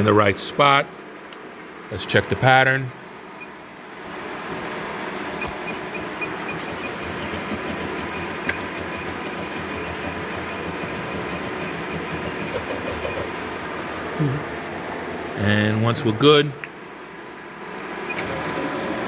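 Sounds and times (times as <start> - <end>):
sewing machine motor whirring: 5.4 - 13.9.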